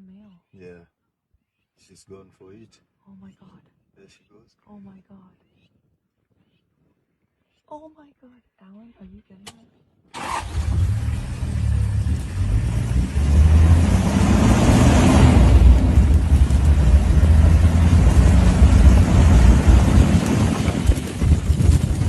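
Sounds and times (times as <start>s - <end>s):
vehicle engine rumbling: 10.2s - 22.0s
rushing noise: 11.7s - 22.0s.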